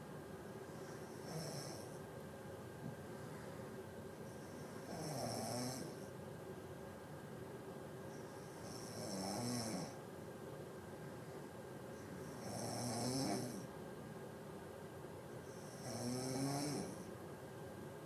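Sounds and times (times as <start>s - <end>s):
person snoring: 0.9s - 1.9s, 4.8s - 6.0s, 8.6s - 10.0s, 12.3s - 13.7s, 15.6s - 17.1s.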